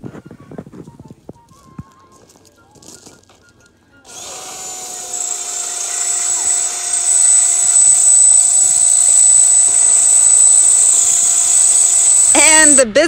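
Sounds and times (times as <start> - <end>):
power tool whining: 4.1 - 12.8.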